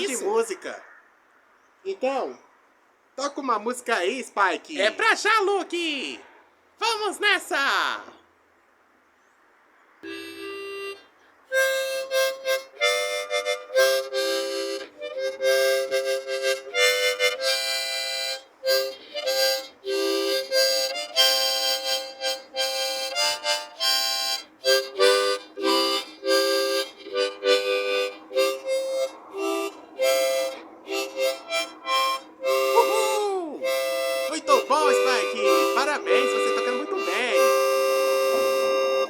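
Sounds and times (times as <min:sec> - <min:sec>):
harmonica playing lively tune: 0:10.0 - 0:39.0.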